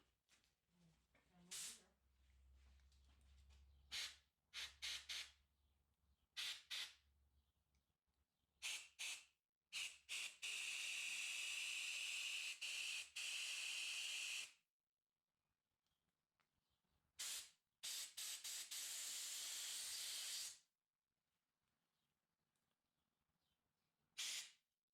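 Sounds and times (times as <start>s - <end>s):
compressed air blasts hissing: 1.5s - 1.8s, 3.9s - 5.3s, 6.4s - 6.9s, 9.8s - 14.4s, 17.2s - 20.6s, 24.2s - 24.6s.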